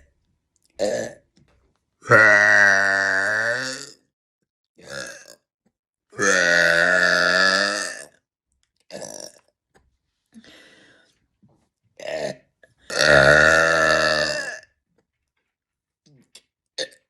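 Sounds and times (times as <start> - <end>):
woman burping: 0.8 - 1.2, 2.0 - 3.9, 4.8 - 5.4, 6.2 - 8.1, 8.9 - 9.4, 12.0 - 14.6.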